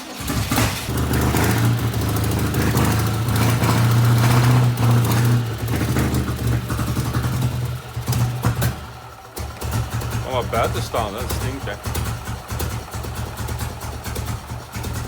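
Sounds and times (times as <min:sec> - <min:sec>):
flat-twin engine running: 0:00.0 - 0:15.0.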